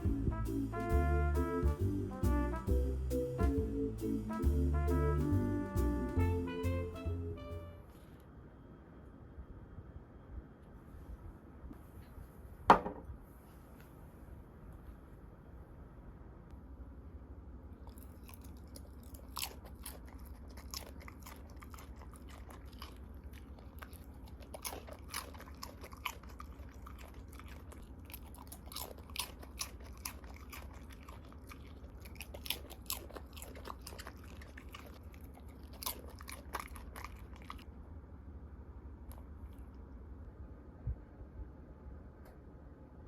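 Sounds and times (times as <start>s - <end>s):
faint low hum: 0.0s - 43.0s
dog chewing food: 17.8s - 37.7s.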